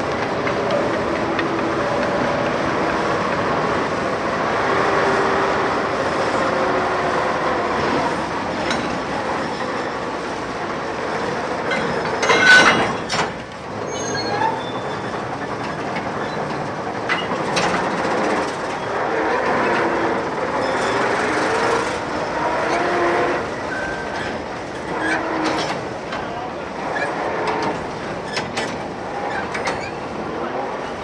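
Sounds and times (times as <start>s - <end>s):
train wagons rolling rumble: 0.0s - 31.0s
wagons clanking together: 11.4s - 22.9s, 23.7s - 31.0s
metallic wheel squeals: 11.7s - 13.2s, 13.8s - 16.5s, 20.6s - 21.8s, 22.4s - 25.8s, 29.2s - 30.1s.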